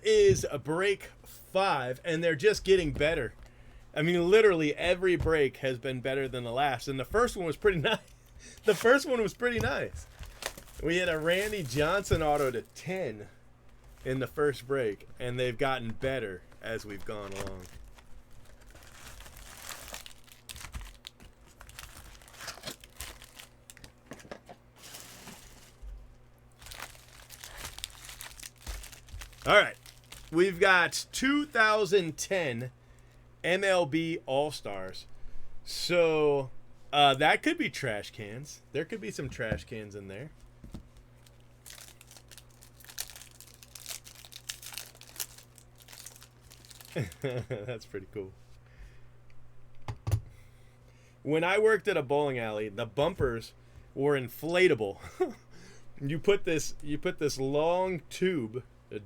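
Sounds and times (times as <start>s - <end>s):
wrapper tearing and crinkling: 8.6s - 12.7s, 16.7s - 24.0s, 24.8s - 25.8s, 26.6s - 30.4s, 41.2s - 47.4s.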